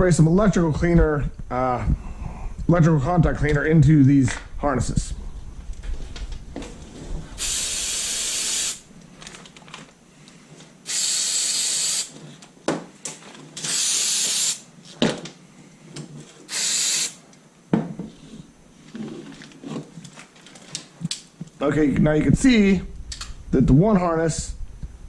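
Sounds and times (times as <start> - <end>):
aerosol spray hissing: 7.4 - 8.9, 10.9 - 12.2, 13.7 - 14.6, 16.5 - 17.2.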